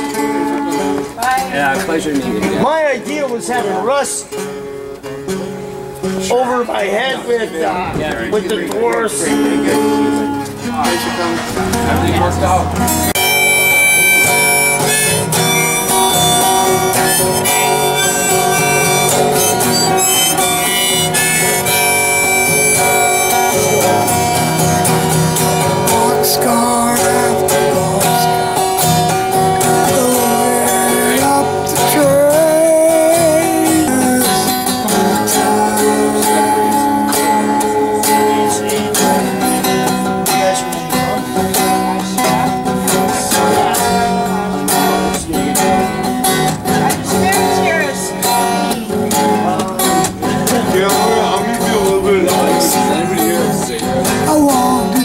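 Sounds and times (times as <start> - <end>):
strummed guitar: 0.0 - 55.0
harmonica playing: 9.2 - 48.8.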